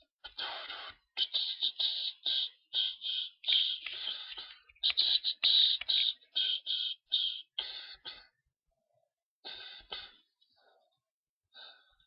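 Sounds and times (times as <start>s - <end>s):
person beatboxing: 0.2s - 8.2s.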